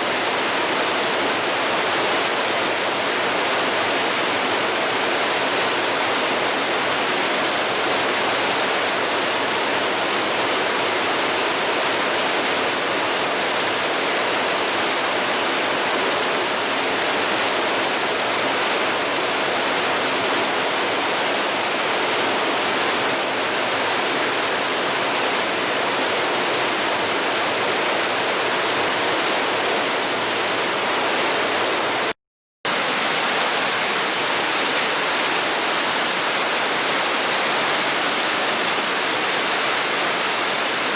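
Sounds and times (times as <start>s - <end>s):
river rushing over rocks: 32.7s - 40.9s.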